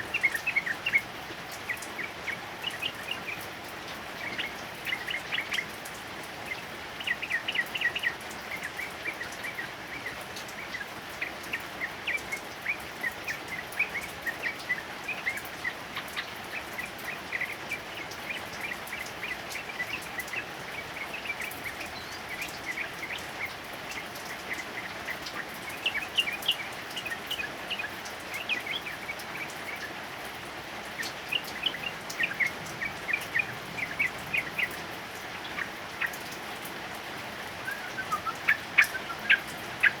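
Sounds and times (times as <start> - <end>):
heavy rain: 0.0 - 40.0
bird singing chirping notes: 31.0 - 36.4, 37.6 - 40.0.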